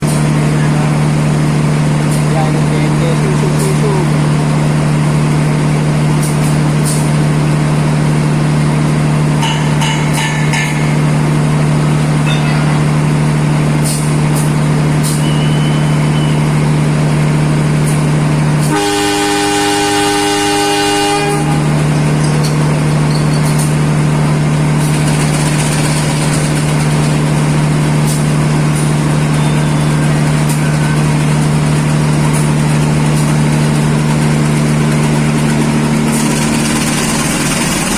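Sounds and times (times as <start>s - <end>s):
diesel locomotive humming: 0.0s - 37.9s
locomotive horn: 18.6s - 21.9s.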